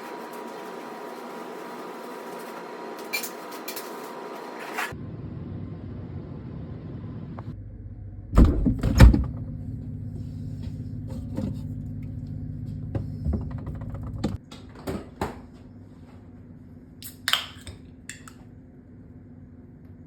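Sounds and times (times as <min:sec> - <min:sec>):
steady low hum: 0:04.9 - 0:20.0.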